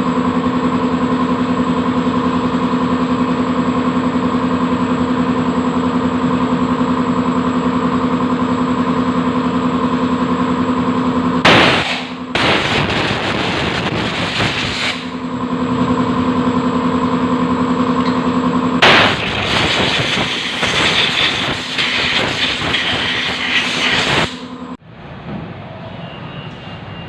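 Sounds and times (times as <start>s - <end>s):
steady mechanical hum: 0.0s - 27.0s
hissing spray blasts: 11.5s - 15.1s, 18.8s - 24.4s.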